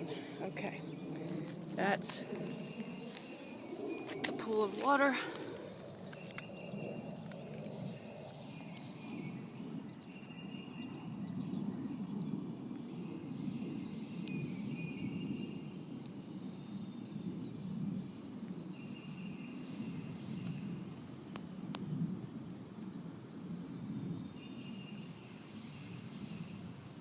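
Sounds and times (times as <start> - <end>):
low outdoor rumble: 0.0 - 10.0.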